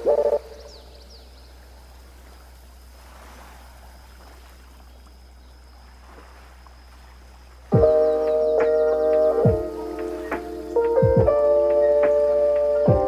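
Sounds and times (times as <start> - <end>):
high bird chirps: 0.0 - 1.6, 7.7 - 13.0
faint sea waves washing: 0.0 - 13.0.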